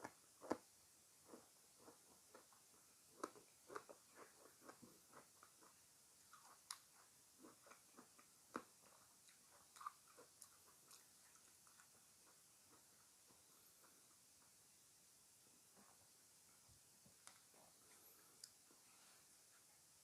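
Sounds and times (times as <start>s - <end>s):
chewing crunchy fruit: 1.3s - 14.2s.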